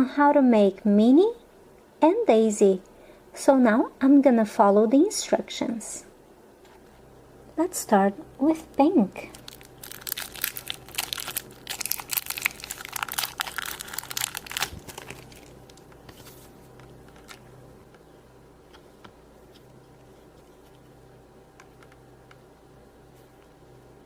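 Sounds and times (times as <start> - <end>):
packaging crinkling: 9.2 - 17.5.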